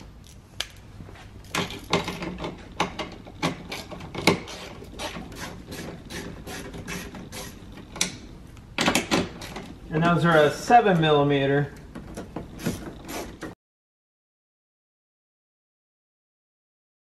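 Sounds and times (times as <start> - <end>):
hand ratchet clicking: 1.5 - 8.2.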